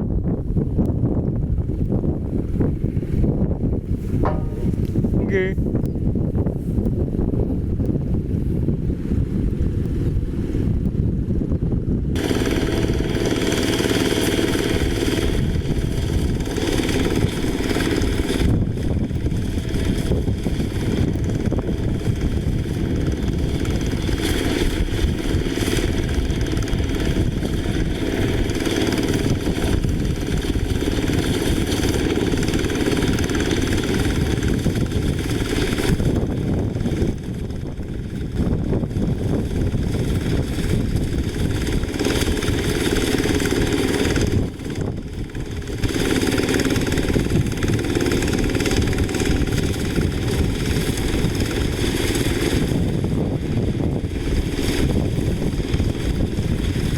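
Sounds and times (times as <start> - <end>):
harvester engine drone: 12.2 - 56.9.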